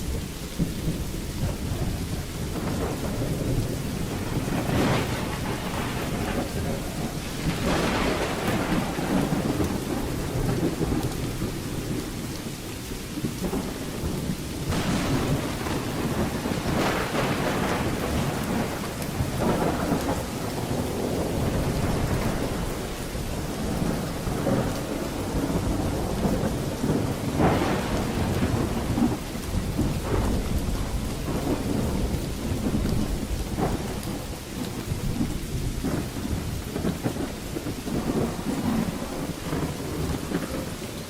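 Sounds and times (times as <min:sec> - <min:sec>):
heavy rain: 0:00.0 - 0:41.0
low rumbling thunder: 0:00.0 - 0:41.0
sharp thunder crack: 0:01.4 - 0:12.0, 0:13.4 - 0:41.0.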